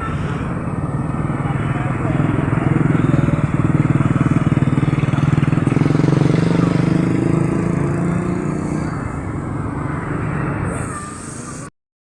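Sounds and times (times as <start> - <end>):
small engine running: 0.0 - 11.7.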